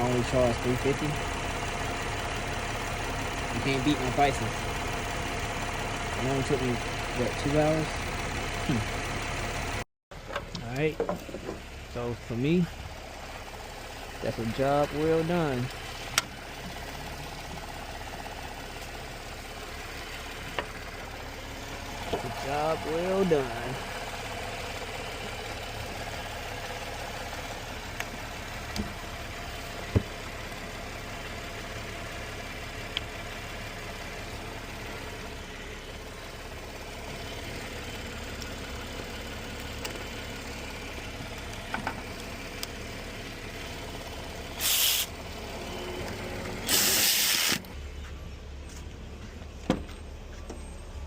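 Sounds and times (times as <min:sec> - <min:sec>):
car engine idling: 0:00.0 - 0:51.0
short bursts of hiss: 0:44.6 - 0:45.1, 0:46.7 - 0:47.6.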